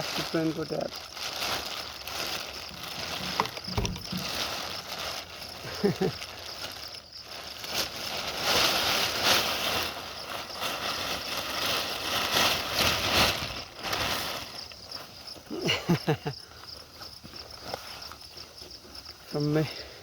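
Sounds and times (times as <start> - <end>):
plastic raincoat rustling: 0.0 - 15.4
crickets chirping: 0.0 - 20.0.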